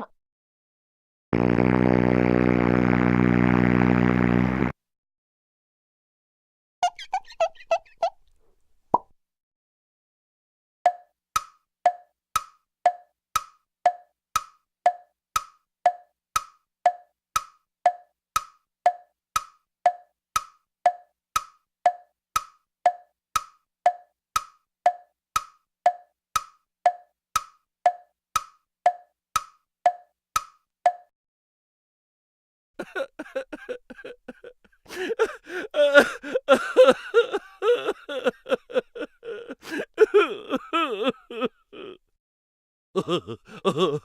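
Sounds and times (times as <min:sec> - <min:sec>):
wooden tick-tock clicks: 0:10.9 - 0:31.1.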